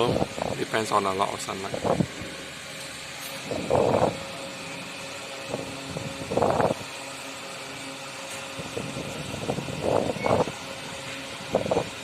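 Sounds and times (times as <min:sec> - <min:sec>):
box fan whirring: 0:00.0 - 0:12.0
wind buffeting microphone: 0:01.7 - 0:02.4, 0:03.4 - 0:04.2, 0:05.5 - 0:06.9, 0:08.6 - 0:12.0.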